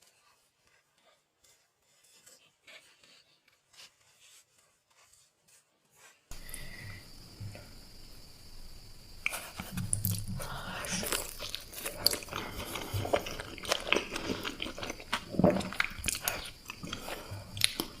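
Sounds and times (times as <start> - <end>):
person chewing pizza: 9.2 - 18.0.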